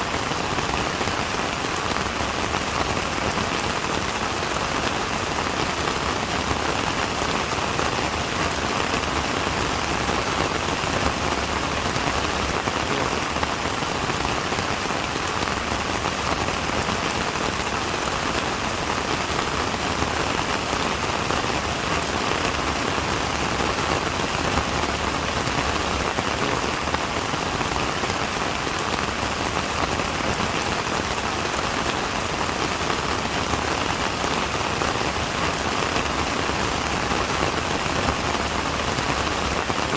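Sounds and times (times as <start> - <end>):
steady rain pattering: 0.0 - 39.9.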